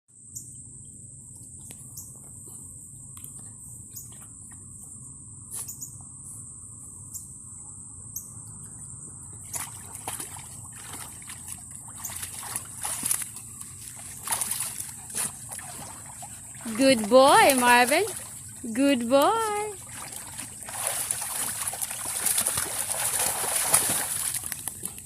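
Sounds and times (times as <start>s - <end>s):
insects chirring: 0.2s - 25.0s
water splashing and sloshing: 9.3s - 25.0s.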